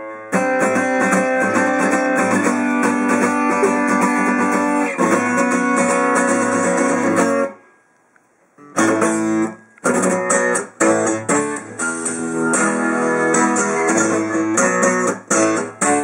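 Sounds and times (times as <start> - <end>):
acoustic guitar chords: 0.0 - 7.7, 8.6 - 16.0.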